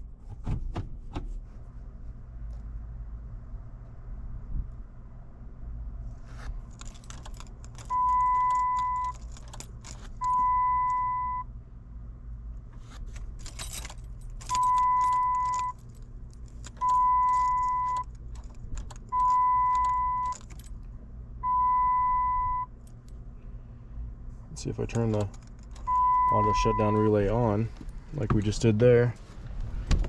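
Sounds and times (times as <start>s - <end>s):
keys jangling and clicking: 6.7s - 11.0s, 12.8s - 20.9s, 24.8s - 28.0s
electronic beeps: 14.5s - 15.8s, 16.8s - 18.0s, 19.1s - 20.3s, 25.9s - 27.0s.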